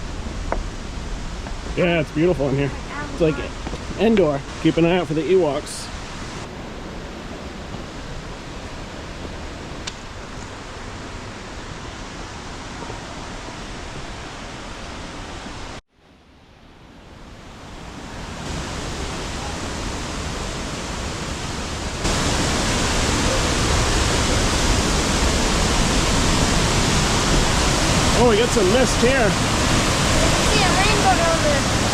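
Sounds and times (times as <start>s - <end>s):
waterfall rushing: 0.0s - 7.6s, 17.6s - 31.9s.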